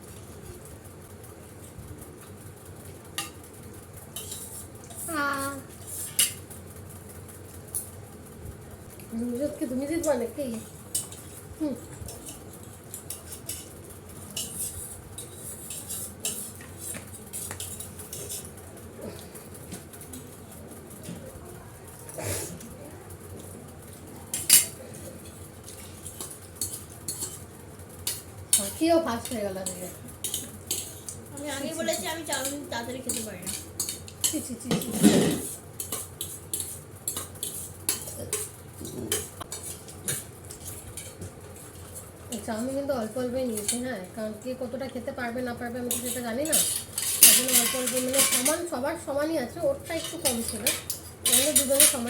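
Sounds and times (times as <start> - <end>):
cutlery clinking against plates: 2.8 - 3.5, 4.1 - 6.6, 10.0 - 21.3, 23.3 - 43.9, 45.9 - 48.7, 49.9 - 52.0.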